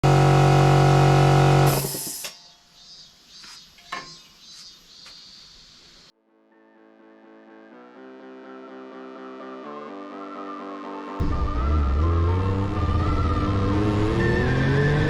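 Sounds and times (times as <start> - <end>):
air compressor humming: 0.0 - 2.3
short air hiss: 1.7 - 2.4.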